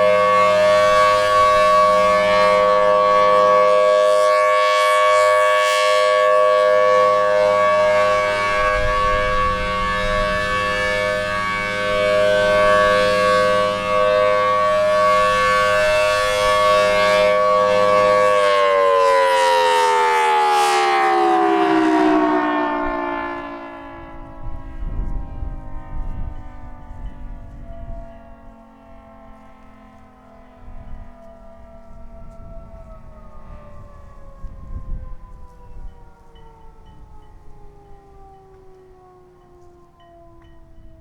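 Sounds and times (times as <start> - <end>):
warning siren: 0.0 - 41.0
wind rumble on microphone: 6.1 - 18.4, 22.2 - 29.4, 30.0 - 41.0.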